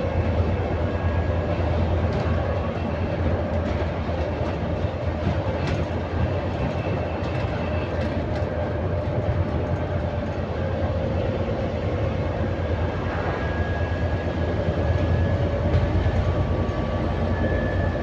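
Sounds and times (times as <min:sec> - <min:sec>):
bus engine drone: 0:00.0 - 0:18.0
road noise: 0:00.0 - 0:18.0
mid-pitched whine: 0:12.1 - 0:16.5.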